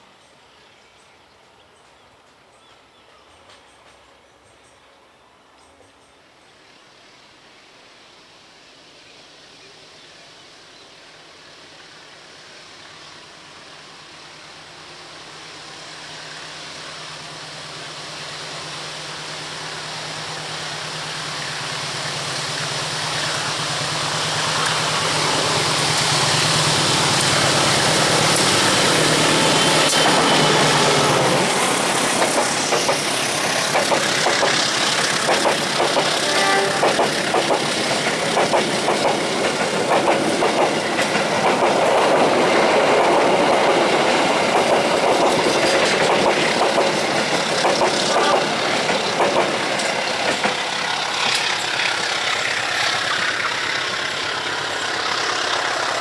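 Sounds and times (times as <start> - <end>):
train engine hum: 0.0 - 56.0
train wheels clattering on rails: 12.8 - 56.0.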